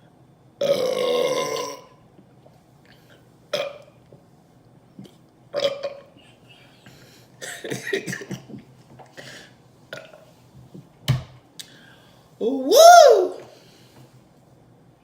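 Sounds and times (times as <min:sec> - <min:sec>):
woman burping: 0:00.6 - 0:01.9.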